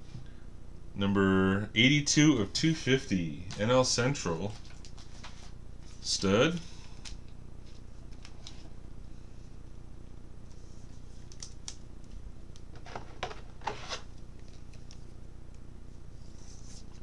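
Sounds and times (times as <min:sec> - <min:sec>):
cards rustling and scraping: 0:04.4 - 0:06.0, 0:12.7 - 0:15.1, 0:16.2 - 0:17.0.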